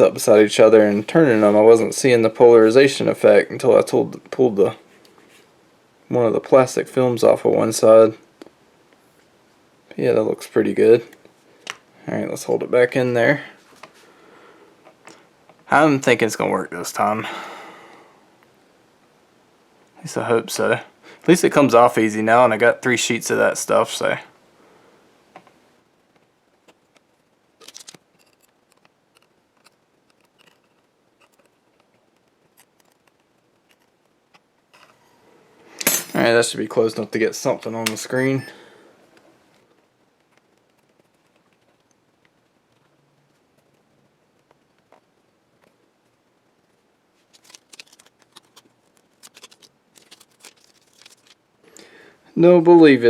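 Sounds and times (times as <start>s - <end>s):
faint clicks of small parts: 25.4s - 35.0s
light plastic rustles: 26.7s - 35.2s, 47.1s - 51.4s.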